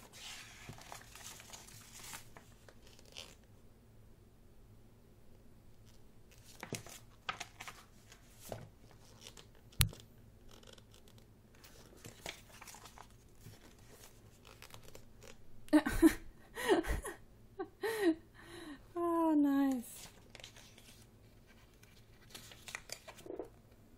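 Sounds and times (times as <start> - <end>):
book pages turning: 0.0 - 3.4, 5.9 - 15.4, 20.0 - 23.6
person speaking: 18.9 - 20.1.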